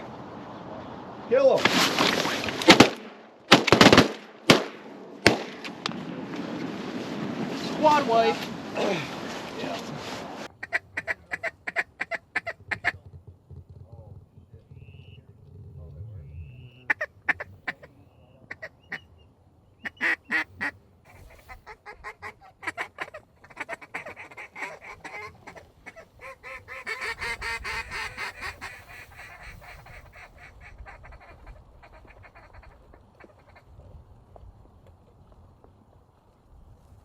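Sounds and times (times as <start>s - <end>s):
flock of ducks calling: 10.5s - 13.0s, 16.5s - 19.1s, 19.8s - 33.7s.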